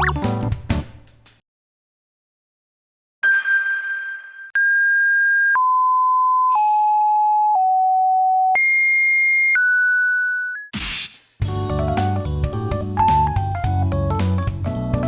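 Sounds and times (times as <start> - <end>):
electronic beep tones: 4.6 - 10.7
ringing chime: 5.6 - 8.7.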